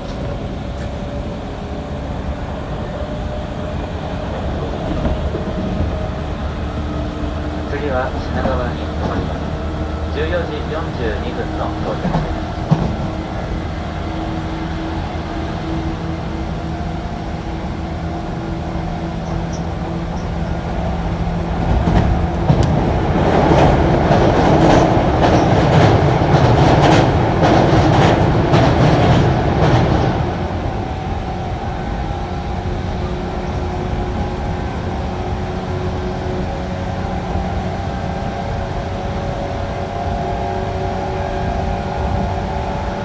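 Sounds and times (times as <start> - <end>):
train rumbling on rails: 0.0 - 43.0
wheels clacking over rail joints: 18.1 - 30.3.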